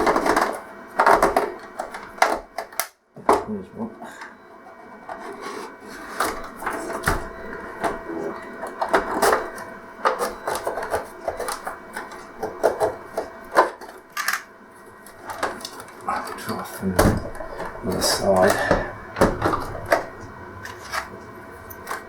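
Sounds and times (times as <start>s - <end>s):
plastic pick scraping plastic casing: 8.7s - 14.5s.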